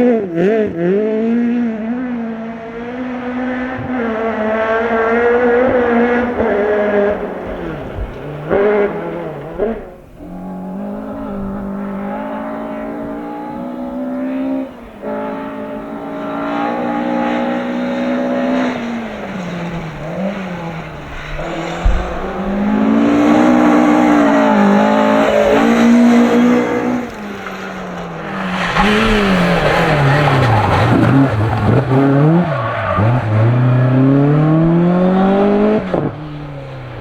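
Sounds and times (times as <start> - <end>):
rally car engines revving: 0.0 - 37.0
low knock: 21.4 - 23.6.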